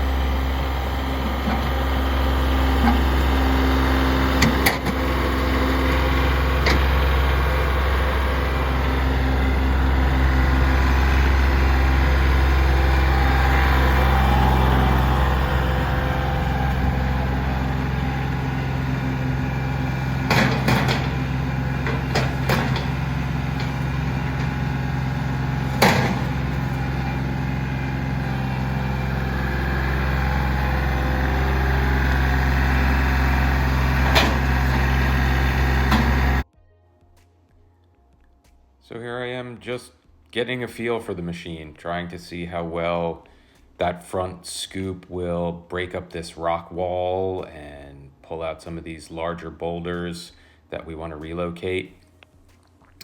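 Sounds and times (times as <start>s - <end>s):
diesel tractor engine running: 0.0s - 36.5s
loader bucket clanking on rock: 20.0s - 28.3s, 33.9s - 35.1s.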